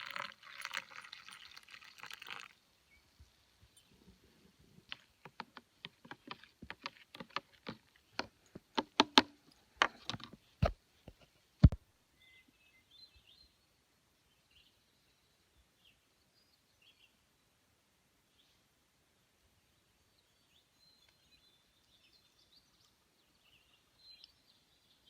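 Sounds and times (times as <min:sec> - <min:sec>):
sharp clicks and knocks: 0:04.9 - 0:11.8
faint bird chirps: 0:12.0 - 0:17.6.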